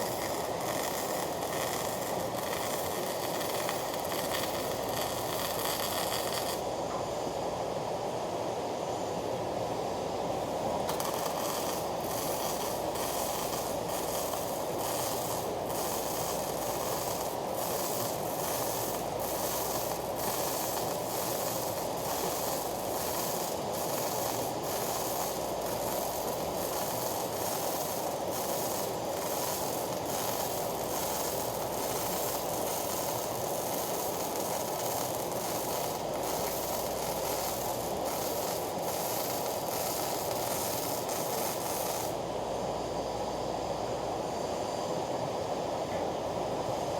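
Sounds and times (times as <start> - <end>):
arc welding hiss and crackle: 0.0 - 46.9.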